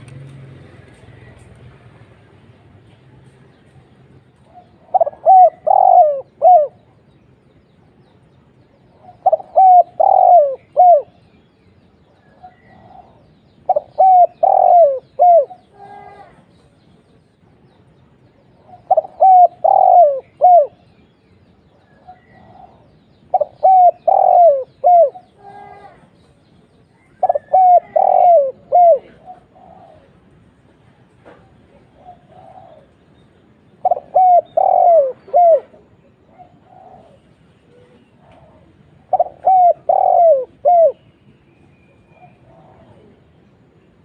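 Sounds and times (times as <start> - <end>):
dove cooing: 4.4 - 7.0, 8.9 - 11.2, 12.3 - 16.4, 18.6 - 20.9, 21.8 - 26.1, 27.0 - 30.4, 31.7 - 33.0, 33.8 - 41.1, 42.1 - 43.2.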